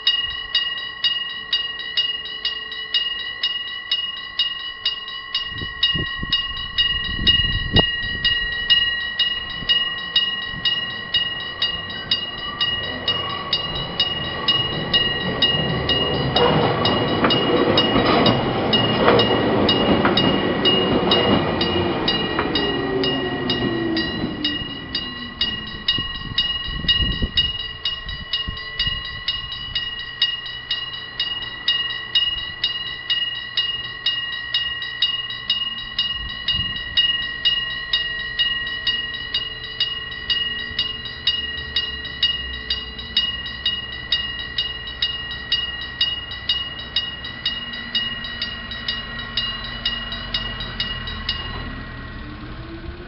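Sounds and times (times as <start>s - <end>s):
level crossing bell ringing: 0.0s - 52.1s
train wheels rumbling: 0.0s - 53.0s
train falling whine: 5.0s - 53.0s.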